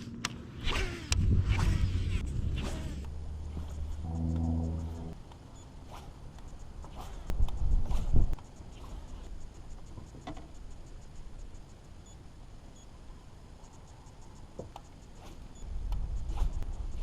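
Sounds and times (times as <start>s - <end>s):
wind buffeting microphone: 1.1s - 4.0s.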